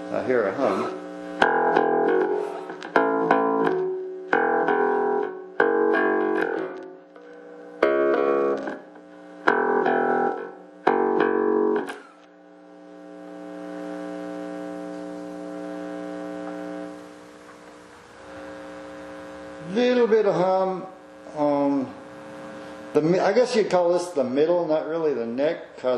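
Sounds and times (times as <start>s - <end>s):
electric bass plucked notes: 0.0s - 17.6s
amplifier hum: 0.0s - 25.9s.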